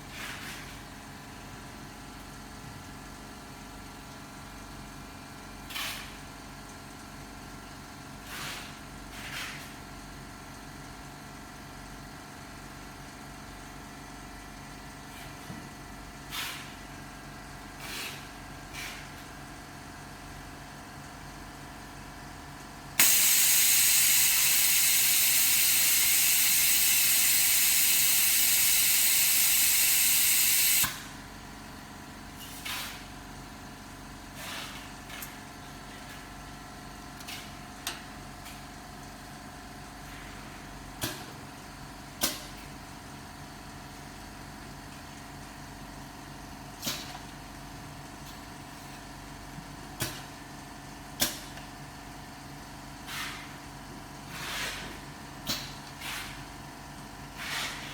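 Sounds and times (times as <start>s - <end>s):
machine humming: 23.0s - 30.9s
compressed air hissing: 23.0s - 31.0s
short puffs of air: 23.0s - 31.1s.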